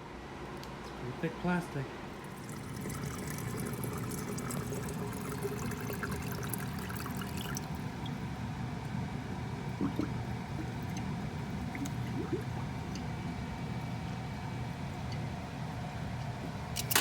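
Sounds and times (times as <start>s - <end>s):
dishwasher low hum: 1.7s - 17.0s
dishwasher water rushing: 2.2s - 17.0s.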